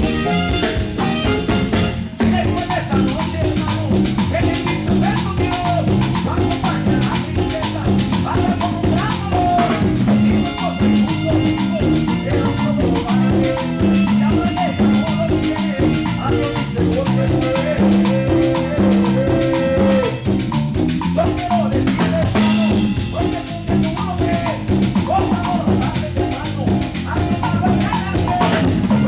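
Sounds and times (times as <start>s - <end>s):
live band playing latin dance music: 0.0s - 29.0s.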